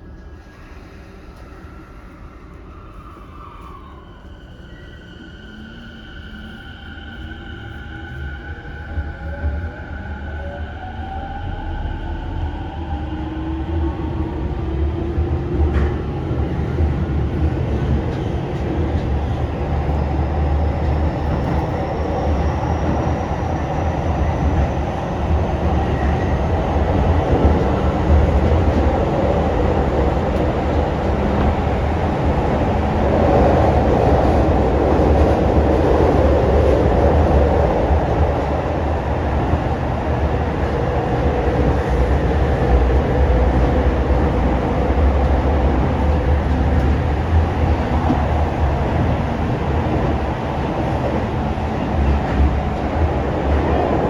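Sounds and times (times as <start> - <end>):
wheels rumbling on rail: 11.1 - 54.0.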